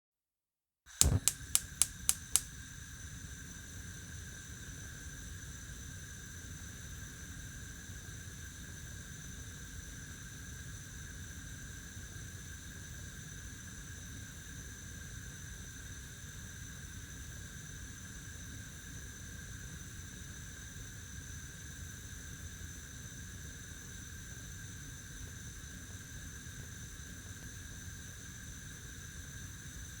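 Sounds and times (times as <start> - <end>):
gas burner hissing: 0.9 - 8.6
gas igniter clicking: 1.0 - 2.5.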